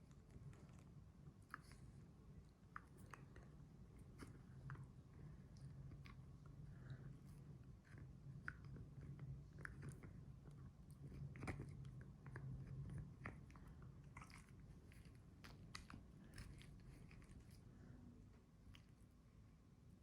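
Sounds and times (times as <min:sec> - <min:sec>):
low steady hum: 0:00.0 - 0:20.0
dog crunching a treat: 0:02.6 - 0:17.9.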